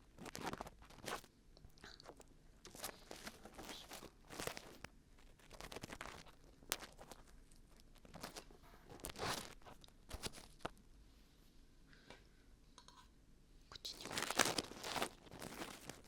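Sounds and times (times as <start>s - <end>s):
crackling and tearing: 0.0s - 1.3s, 1.9s - 10.8s, 13.9s - 16.0s.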